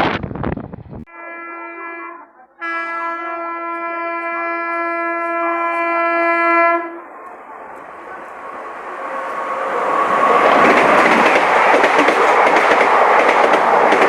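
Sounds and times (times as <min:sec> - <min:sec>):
locomotive horn blasts: 0:01.1 - 0:07.1.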